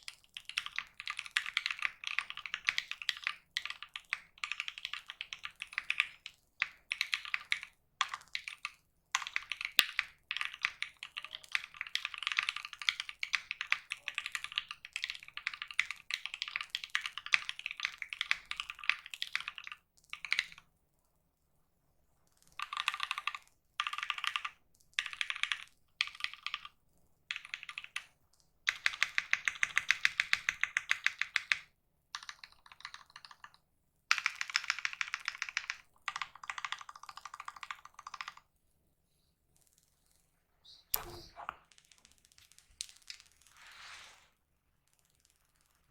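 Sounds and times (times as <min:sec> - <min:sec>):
mechanical keyboard typing: 0:00.0 - 0:20.6, 0:22.5 - 0:38.5.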